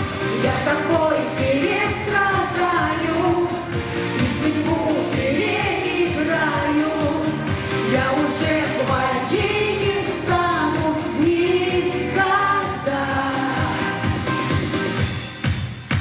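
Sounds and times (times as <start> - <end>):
pop song with singing: 0.0 - 15.7.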